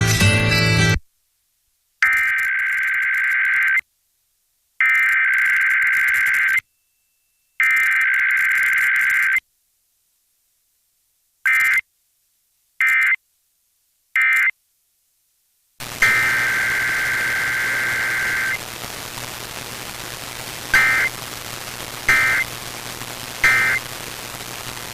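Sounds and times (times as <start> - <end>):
digital data bursts: 15.8 - 18.8, 19.8 - 24.9
radio static: 15.8 - 24.9.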